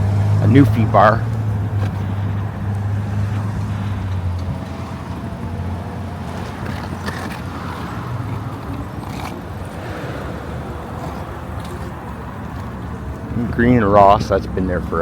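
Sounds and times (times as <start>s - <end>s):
road noise: 0.0s - 15.0s
vehicle engine drone: 0.0s - 15.0s.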